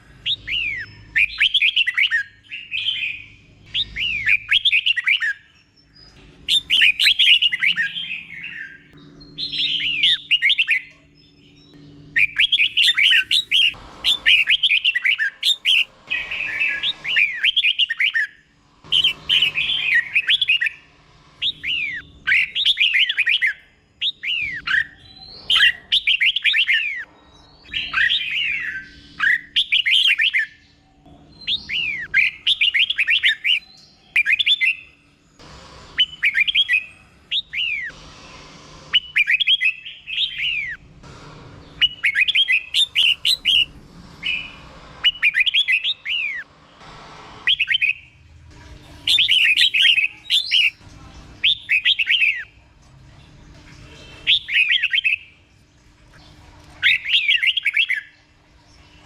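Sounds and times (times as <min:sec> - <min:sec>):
bird singing whistled notes: 0:00.2 - 0:20.8.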